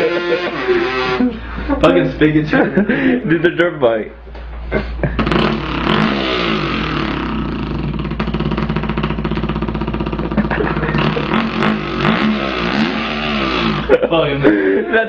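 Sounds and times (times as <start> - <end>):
man imitating motorbike engine: 0.0 - 1.4, 4.8 - 14.1.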